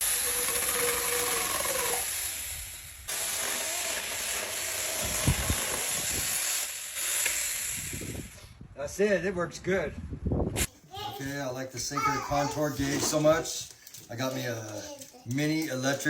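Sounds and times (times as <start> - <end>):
electric chainsaw cutting wood: 0.0 - 8.5.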